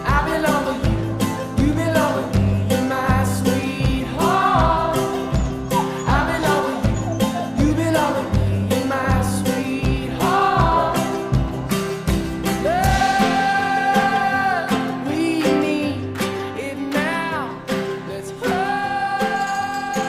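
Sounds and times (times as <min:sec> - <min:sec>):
drum beat: 0:00.0 - 0:14.4
pop song with singing: 0:00.0 - 0:20.0.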